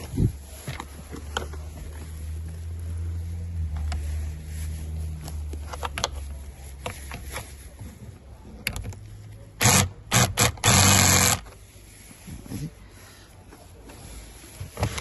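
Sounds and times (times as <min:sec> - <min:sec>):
clicks and scrapes on plastic: 0:05.1 - 0:11.6, 0:14.6 - 0:15.0
loud short rasping bursts: 0:09.6 - 0:11.4.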